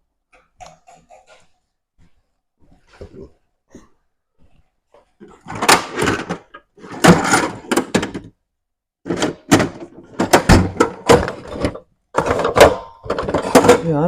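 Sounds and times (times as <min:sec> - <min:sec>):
clatter of hand tools and metal parts: 0:05.2 - 0:08.4, 0:09.0 - 0:14.0.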